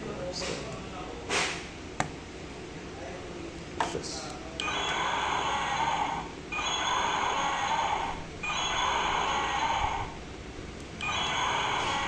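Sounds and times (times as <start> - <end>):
electronic toy roar: 4.6 - 10.2, 11.0 - 12.0.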